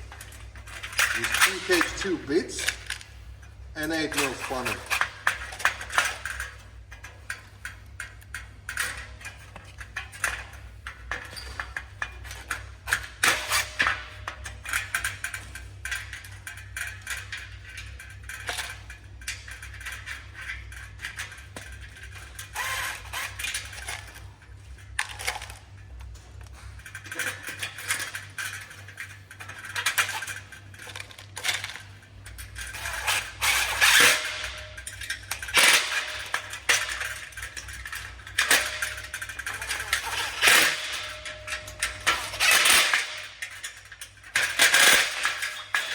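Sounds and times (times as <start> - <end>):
metal parts clinking: 0.1 - 3.0, 3.8 - 6.5, 32.4 - 45.9.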